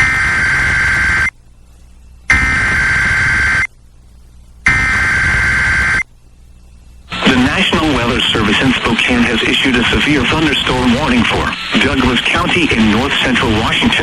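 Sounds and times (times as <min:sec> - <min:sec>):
digital data tone bursts: 0:00.0 - 0:01.3, 0:02.3 - 0:03.7, 0:04.7 - 0:06.1, 0:07.1 - 0:14.0.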